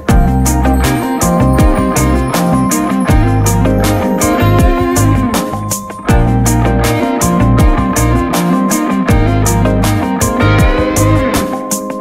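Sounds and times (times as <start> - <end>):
steady drum beat: 0.0 - 8.5, 9.1 - 11.3
smooth jazz instrumental: 0.0 - 12.0
deep kick drum hits: 1.6 - 1.9.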